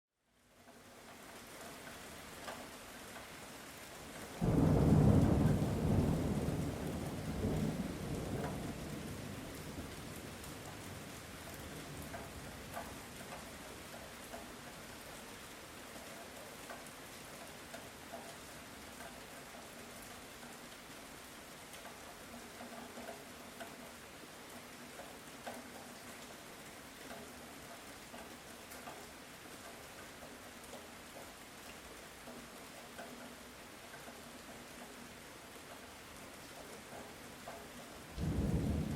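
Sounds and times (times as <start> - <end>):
light rain falling: 0.2 - 38.9
thunder clap and rumble: 4.4 - 10.7, 38.1 - 38.9.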